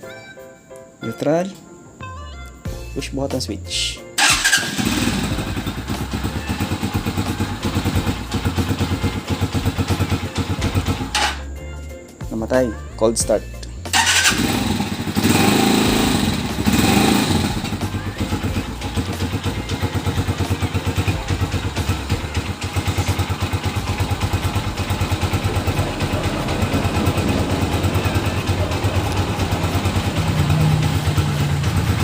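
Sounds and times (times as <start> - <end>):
motorcycle engine idling: 4.2 - 11.5, 13.9 - 32.0
motorcycle engine revving: 4.2 - 11.5, 13.9 - 32.0.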